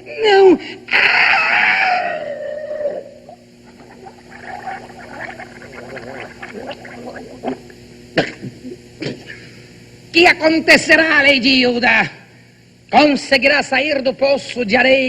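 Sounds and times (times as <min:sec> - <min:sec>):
gurgling bubbling sounds: 0:03.6 - 0:07.8.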